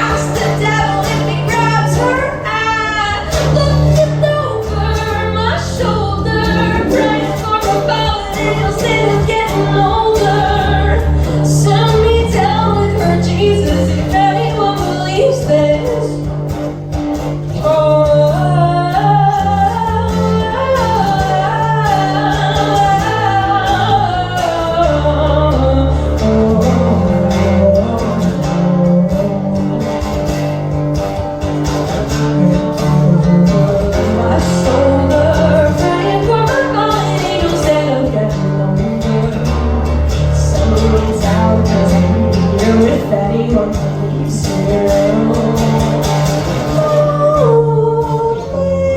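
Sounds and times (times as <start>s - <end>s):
person singing: 0.0s - 16.3s, 31.6s - 48.9s
bass line: 0.0s - 48.9s
guitar: 0.0s - 48.9s.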